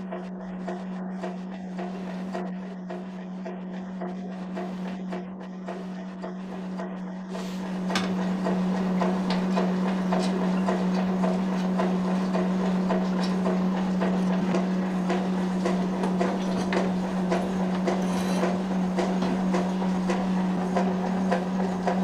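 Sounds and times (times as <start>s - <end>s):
workshop machine humming: 0.0s - 22.0s
irregular machine clattering: 7.6s - 22.0s.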